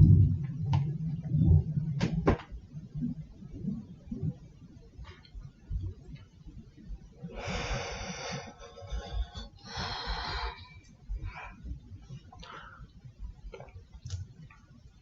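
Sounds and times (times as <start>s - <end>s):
person breathing: 7.3s - 13.1s.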